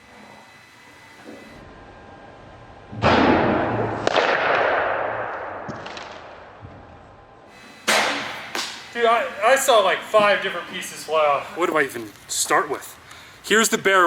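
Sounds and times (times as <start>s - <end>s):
sharp knock: 7.8s - 8.8s.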